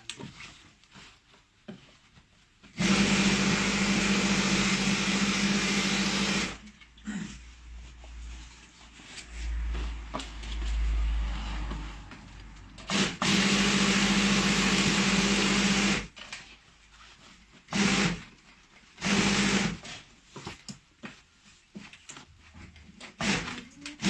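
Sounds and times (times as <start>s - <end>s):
industrial sewing machine running: 2.8s - 6.6s, 11.3s - 16.1s, 17.7s - 18.2s, 19.0s - 19.8s, 23.2s - 24.0s.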